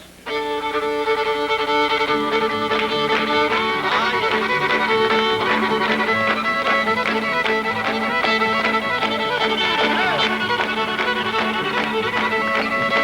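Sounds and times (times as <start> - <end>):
country band backing: 0.0 - 13.0
fiddle playing fast: 0.2 - 13.0.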